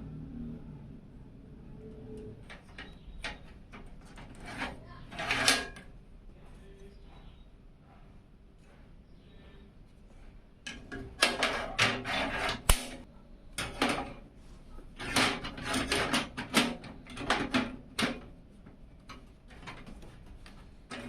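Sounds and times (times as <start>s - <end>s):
computer case parts clattering: 15.0s - 18.3s.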